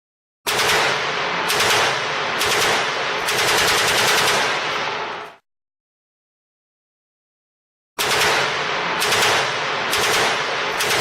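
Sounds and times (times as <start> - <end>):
submachine gun firing full-auto: 0.5 - 5.0, 8.0 - 11.0.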